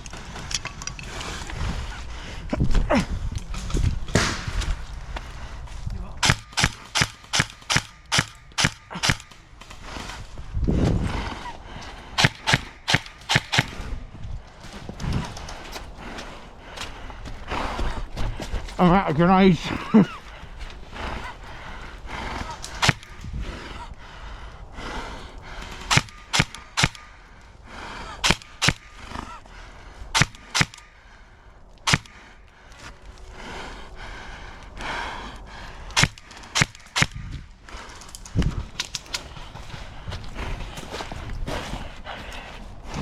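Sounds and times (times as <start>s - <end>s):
airsoft gun shots: 4.1s - 4.7s, 6.2s - 9.4s, 12.2s - 13.8s, 25.9s - 27.0s, 28.2s - 28.9s, 30.2s - 30.9s, 31.9s - 32.3s.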